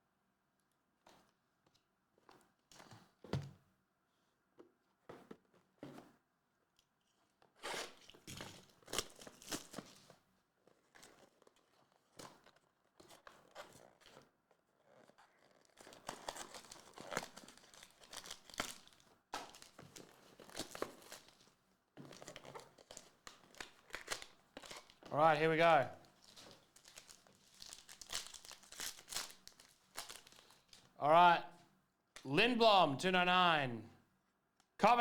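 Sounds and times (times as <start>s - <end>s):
plastic wrapping crinkling: 16.1s - 21.5s, 22.1s - 25.1s, 26.0s - 31.0s.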